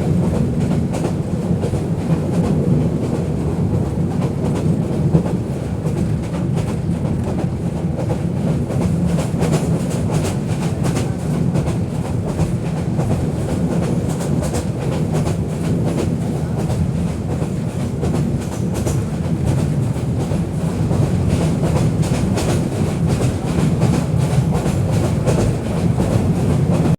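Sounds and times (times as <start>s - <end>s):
train rumbling on track: 0.0s - 26.9s.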